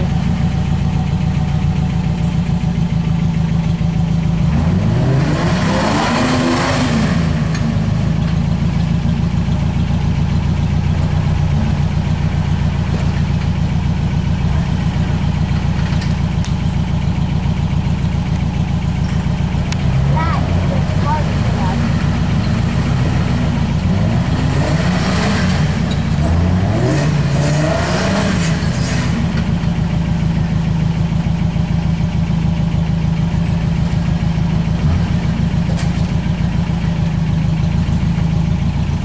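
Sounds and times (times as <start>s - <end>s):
off-road vehicle engine idling: 0.0s - 39.0s
engine revving: 4.4s - 8.4s, 19.4s - 31.1s, 33.4s - 36.2s.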